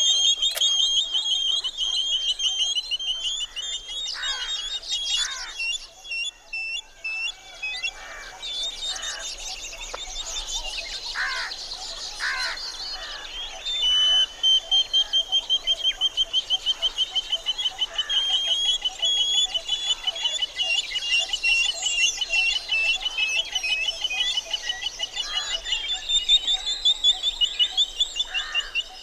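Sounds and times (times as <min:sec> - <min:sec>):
high repeated bird chirping: 0:00.0 - 0:03.8
lower falling bird calls: 0:00.0 - 0:05.9.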